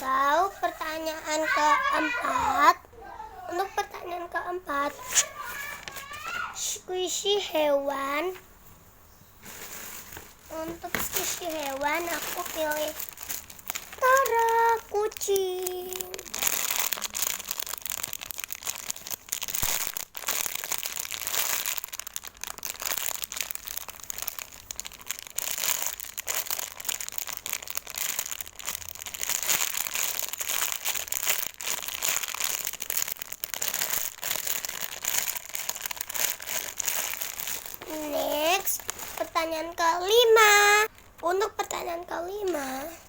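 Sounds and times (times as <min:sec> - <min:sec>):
plastic wrapping crinkling: 0:00.0 - 0:02.8, 0:03.5 - 0:06.6, 0:07.9 - 0:43.0.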